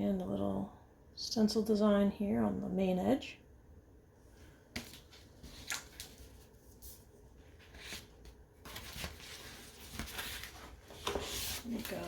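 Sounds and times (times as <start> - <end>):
book rustling: 4.7 - 12.0.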